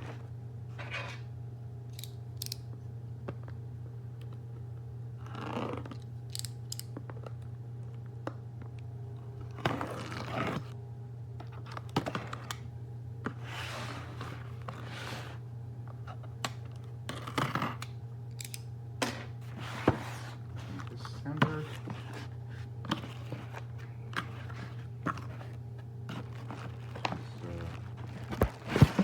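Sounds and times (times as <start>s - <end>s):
steady low hum: 0.0s - 29.0s
handling rustles scrapes and clicks: 19.2s - 29.0s.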